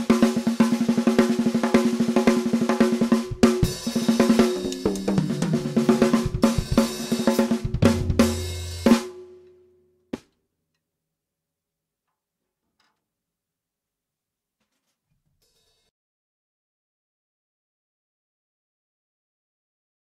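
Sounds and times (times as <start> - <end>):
drum kit groove: 0.0 - 9.3
ringing snare drum: 0.0 - 9.3.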